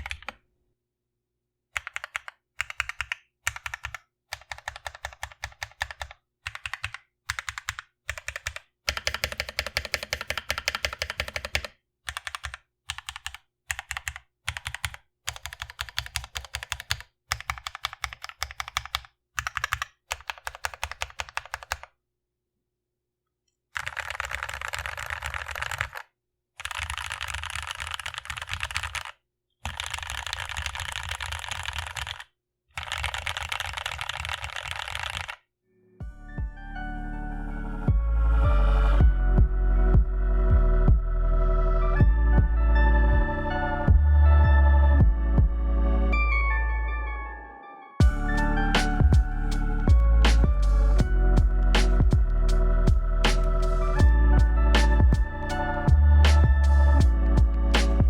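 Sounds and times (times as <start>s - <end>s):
mechanical keyboard key clicks: 1.8s - 21.9s.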